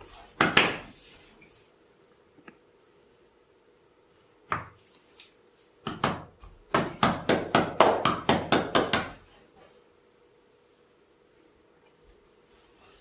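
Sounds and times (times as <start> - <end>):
massage slap: 0.4 - 0.9
rhythmic massage taps: 5.8 - 9.2.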